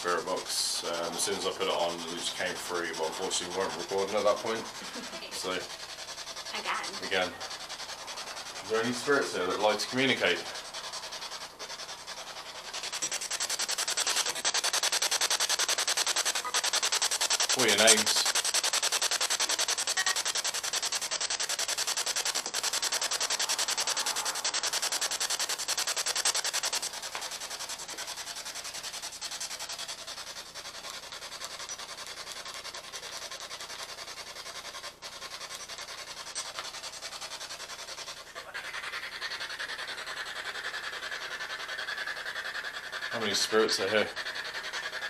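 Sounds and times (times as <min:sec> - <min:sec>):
chopped radio static hiss: 0:00.0 - 0:29.8.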